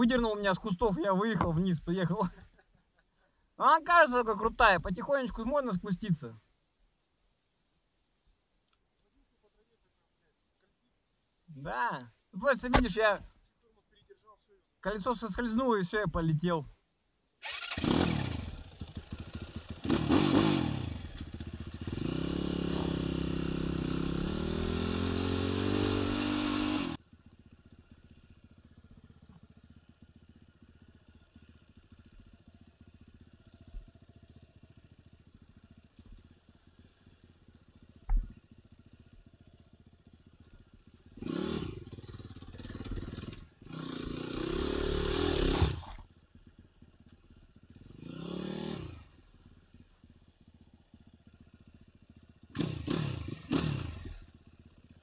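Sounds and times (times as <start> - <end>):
faint low engine sound: 0.0 - 20.1, 26.9 - 55.0
dirt bike engine revving: 17.4 - 36.0, 36.7 - 46.1, 47.4 - 49.8, 50.9 - 54.9.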